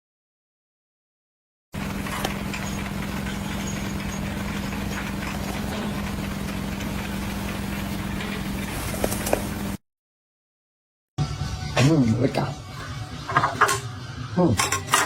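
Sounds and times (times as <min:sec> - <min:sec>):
engine idling: 0:01.8 - 0:09.8.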